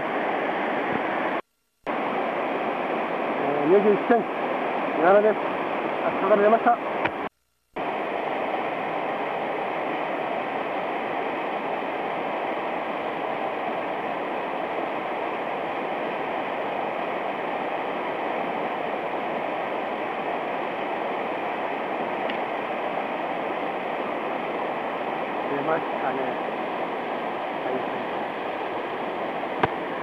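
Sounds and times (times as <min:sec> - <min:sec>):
rushing mountain stream: 0:00.0 - 0:30.0.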